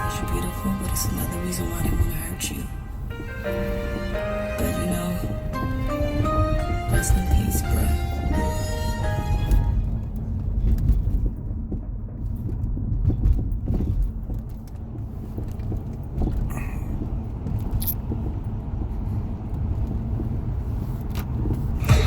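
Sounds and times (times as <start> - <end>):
car road noise rumble: 0.0 - 22.0
small clicks and rattles: 10.0 - 21.9.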